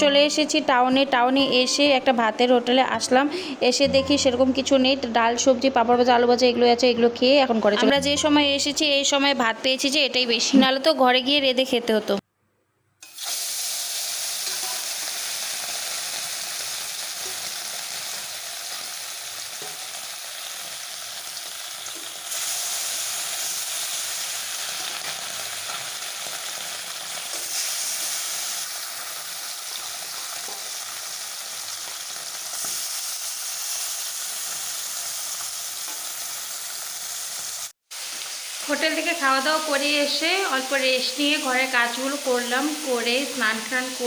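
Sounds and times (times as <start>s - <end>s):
food sizzling in hot oil: 13.0s - 44.0s.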